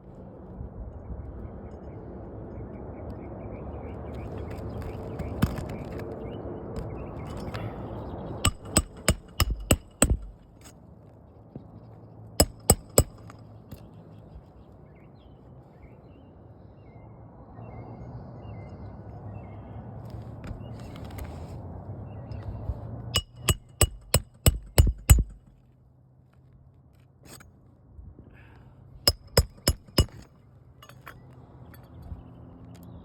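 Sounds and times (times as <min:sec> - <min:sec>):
hammer striking nails: 0:08.4 - 0:10.5, 0:12.4 - 0:13.4, 0:23.2 - 0:25.6, 0:29.1 - 0:31.2.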